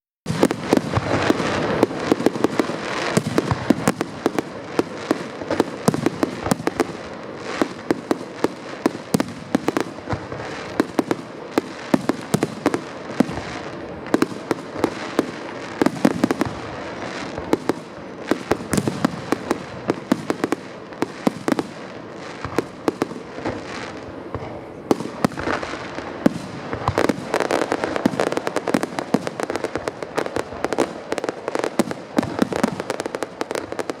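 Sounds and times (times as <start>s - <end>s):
fireworks bursts and bangs: 0.2s - 34.0s
fireworks crackle: 0.3s - 34.0s.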